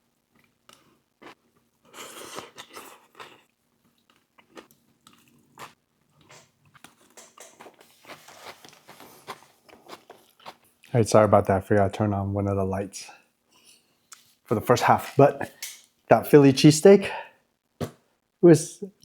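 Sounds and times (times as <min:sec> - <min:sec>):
chewing and biting sandwich: 0:00.3 - 0:10.9
soft crunches of bread: 0:00.3 - 0:10.9.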